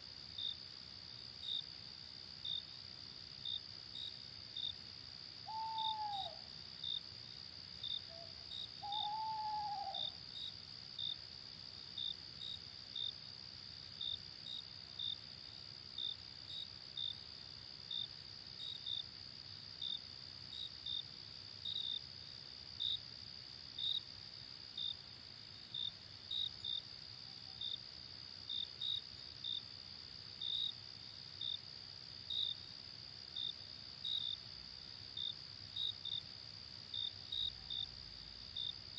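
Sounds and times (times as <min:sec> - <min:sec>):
crickets chirping: 0:00.0 - 0:38.9
owl hooting: 0:05.4 - 0:06.5, 0:08.1 - 0:10.2
high insect trill: 0:05.4 - 0:11.2.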